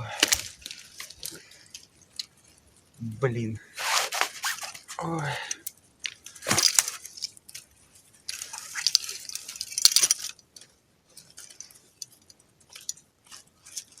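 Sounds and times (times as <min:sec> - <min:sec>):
hissy scratchy noise: 0:02.9 - 0:05.2
scuffling and scraping: 0:03.7 - 0:05.4, 0:06.0 - 0:14.0
sharp clicks of metal trap: 0:09.8 - 0:10.4.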